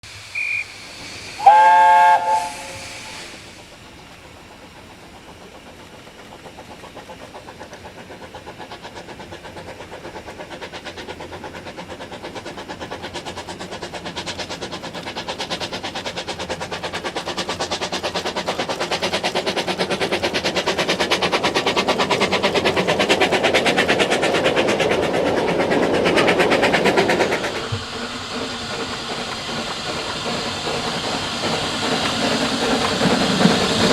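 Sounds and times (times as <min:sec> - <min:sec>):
locomotive exhaust chuffing: 0:00.2 - 0:33.9
steam locomotive whistle: 0:00.3 - 0:03.4.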